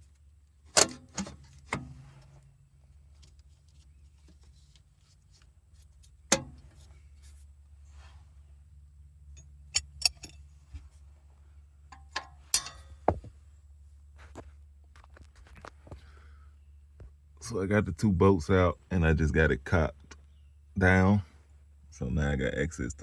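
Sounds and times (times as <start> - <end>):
tools clinking against metal: 9.3 - 10.5, 11.9 - 13.3.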